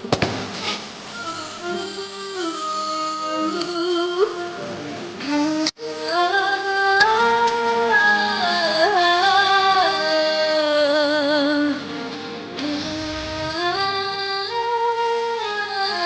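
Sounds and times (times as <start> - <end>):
slow pop ballad: 8.9 - 15.6.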